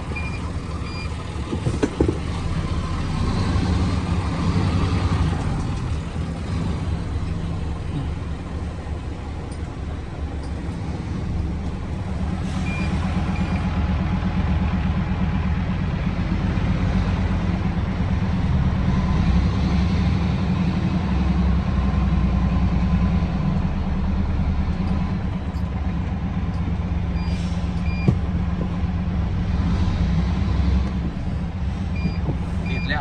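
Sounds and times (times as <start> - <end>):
heavy diesel engine running: 0.0 - 33.0
reversing alarm beeps: 0.2 - 1.1, 32.0 - 33.0.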